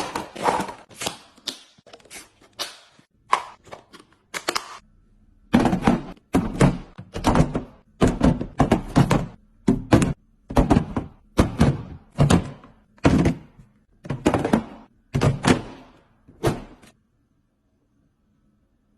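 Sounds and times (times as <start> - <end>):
items clunking into a fridge: 5.5 - 16.9.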